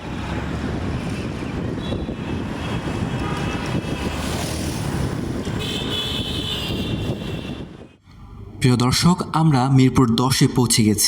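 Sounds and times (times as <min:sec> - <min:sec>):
road traffic rumble: 0:00.0 - 0:11.0
vehicle horn: 0:01.8 - 0:04.0, 0:05.5 - 0:08.0.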